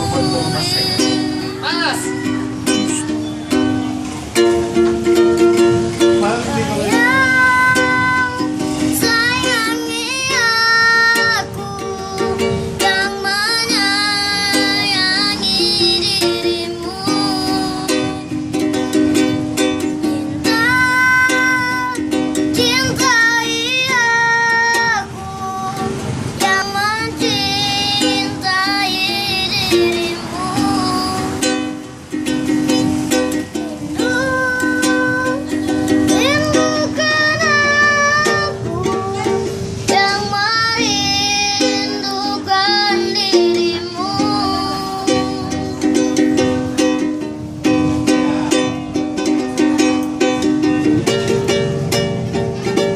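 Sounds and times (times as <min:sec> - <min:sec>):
child singing: 0:00.0 - 0:03.3, 0:06.4 - 0:18.5, 0:19.8 - 0:31.8, 0:33.5 - 0:46.4
strummed string instrument: 0:00.0 - 0:52.9.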